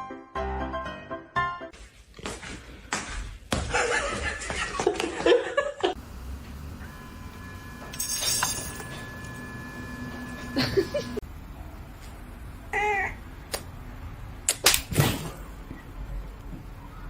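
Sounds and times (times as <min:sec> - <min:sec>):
person laughing: 0:03.7 - 0:06.0, 0:10.5 - 0:11.2.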